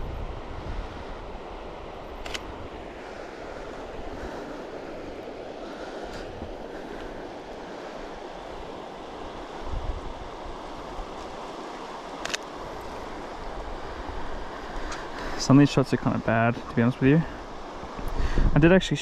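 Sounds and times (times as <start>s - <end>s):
wind buffeting microphone: 0.0s - 18.8s
river water flowing: 0.0s - 19.0s
sharp click: 12.2s - 12.5s.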